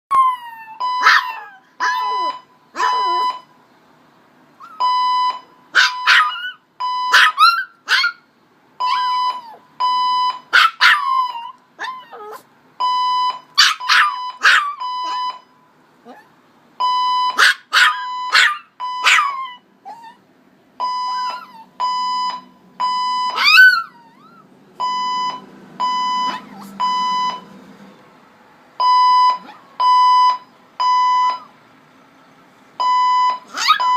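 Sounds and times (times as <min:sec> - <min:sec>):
dog barking and howling: 0:00.1 - 0:03.3, 0:05.8 - 0:08.2, 0:10.6 - 0:12.4, 0:13.6 - 0:15.3, 0:17.4 - 0:20.2, 0:21.2 - 0:21.7, 0:23.3 - 0:24.5, 0:26.2 - 0:26.8, 0:33.5 - 0:33.9
fire alarm beeping: 0:02.0 - 0:03.5, 0:04.8 - 0:07.2, 0:08.8 - 0:10.5, 0:12.8 - 0:15.5, 0:16.8 - 0:17.4, 0:18.0 - 0:19.1, 0:20.8 - 0:23.4, 0:24.8 - 0:27.4, 0:28.8 - 0:31.4, 0:32.8 - 0:33.9.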